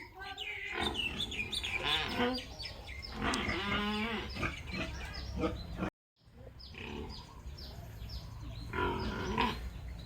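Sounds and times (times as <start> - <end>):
pigs grunting and squealing: 0.6 - 5.9, 6.6 - 7.4, 8.6 - 9.9.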